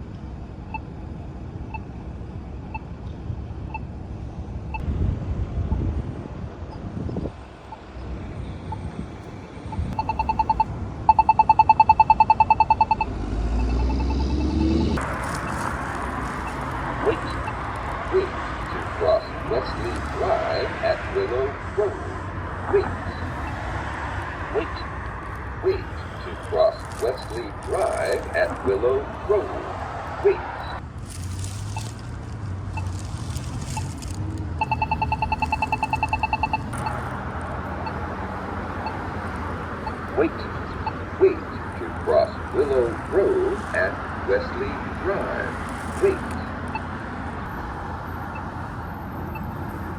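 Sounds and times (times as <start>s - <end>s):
passing vehicle rumble: 2.7s - 49.9s
crosswalk button ticking: 9.8s - 28.7s, 34.6s - 38.1s.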